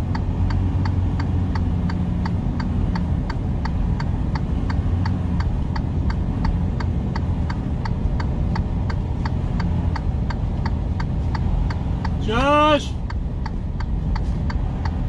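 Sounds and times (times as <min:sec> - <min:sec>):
truck engine and road rumble: 0:00.0 - 0:15.0.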